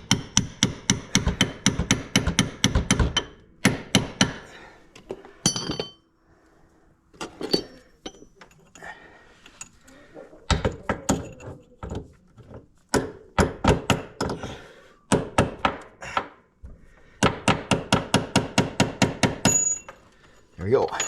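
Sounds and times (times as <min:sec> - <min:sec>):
hammer tapping on metal pin: 0:00.1 - 0:04.4.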